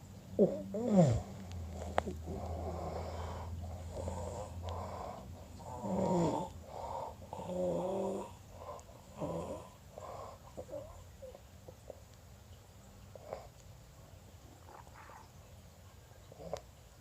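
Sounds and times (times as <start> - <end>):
man snoring: 0.4 - 1.3, 5.6 - 6.5, 7.3 - 8.4.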